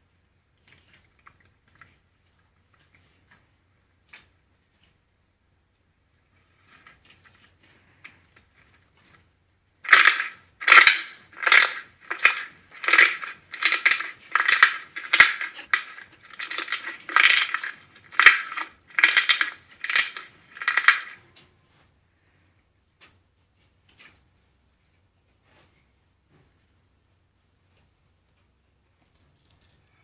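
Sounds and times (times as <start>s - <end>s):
slime squishing: 9.8s - 21.2s.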